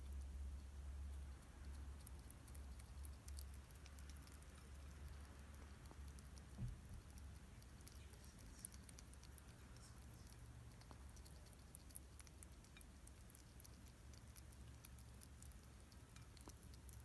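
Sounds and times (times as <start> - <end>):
hedgehog chewing kibble: 0.0 - 17.0
low steady hum: 0.0 - 17.0
soft low thump: 6.5 - 6.8.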